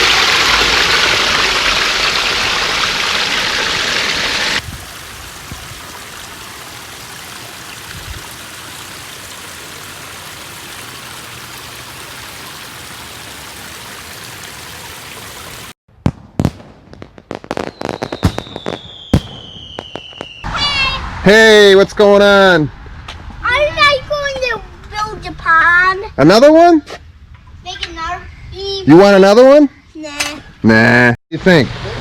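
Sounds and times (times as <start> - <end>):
water flowing and trickling: 0.0 - 15.8
thin falling whistle: 17.6 - 20.8.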